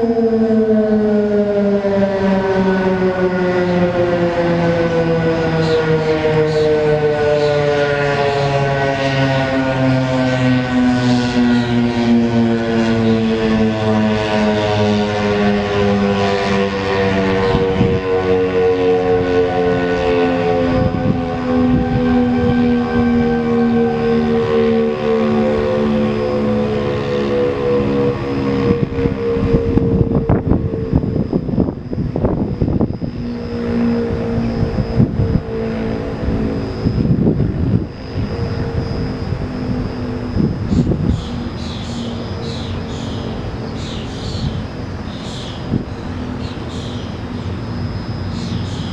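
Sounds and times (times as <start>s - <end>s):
warning siren steady tone: 0.0s - 48.9s
gusty rumble: 27.7s - 43.8s.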